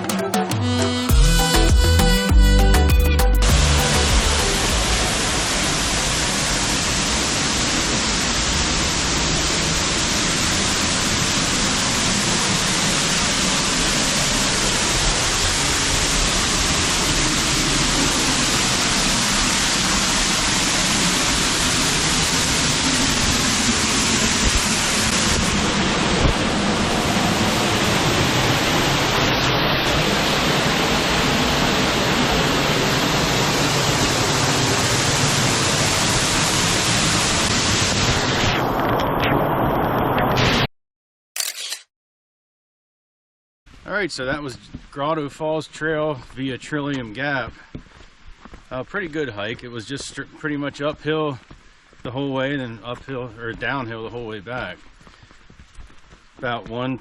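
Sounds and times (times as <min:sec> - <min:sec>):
falling water rushing: 0:03.4 - 0:40.7.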